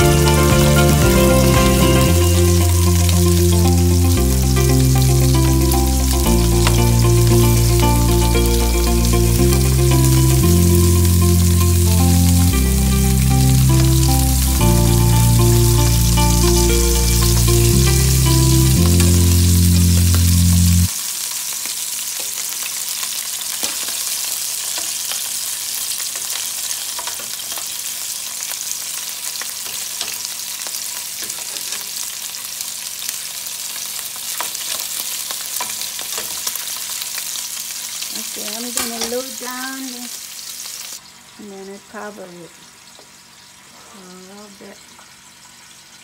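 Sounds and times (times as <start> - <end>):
background music: 0.0 - 20.9
sausages sizzling in a frying pan: 0.0 - 46.0.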